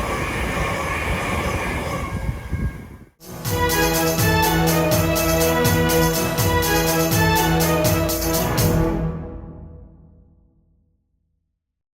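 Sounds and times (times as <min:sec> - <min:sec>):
background music: 0:03.2 - 0:10.8.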